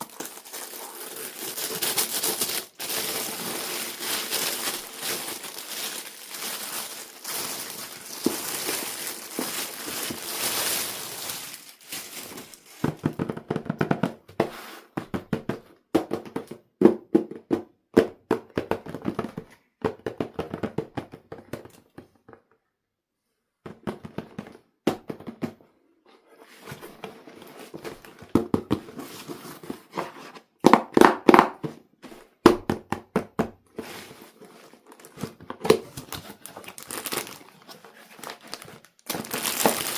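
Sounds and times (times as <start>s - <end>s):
plastic packaging crinkling: 0.0s - 13.2s, 34.4s - 39.9s.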